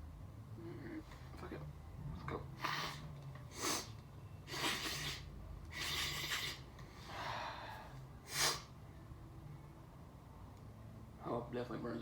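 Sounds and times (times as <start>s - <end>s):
man sniffing through nose: 2.6s - 8.8s.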